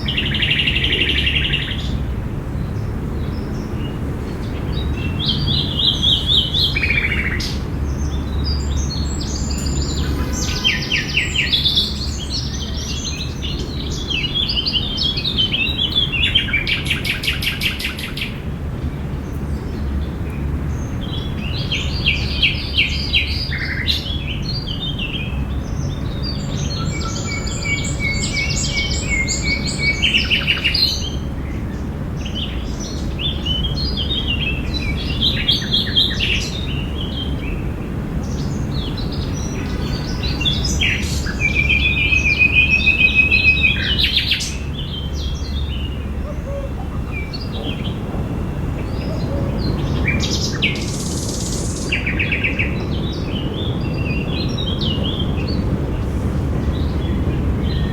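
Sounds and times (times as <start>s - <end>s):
songbirds chirping and singing: 0.0s - 57.9s
bird trill: 4.7s - 18.3s, 21.6s - 37.6s, 38.2s - 55.6s
low background rumble: 24.2s - 57.9s.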